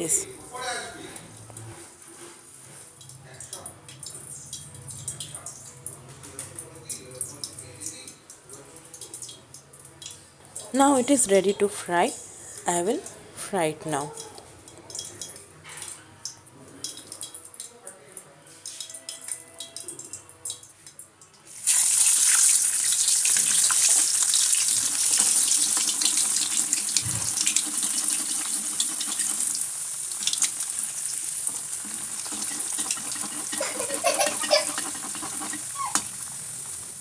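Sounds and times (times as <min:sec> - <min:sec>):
oil sizzling loudly: 0:21.5 - 0:37.0.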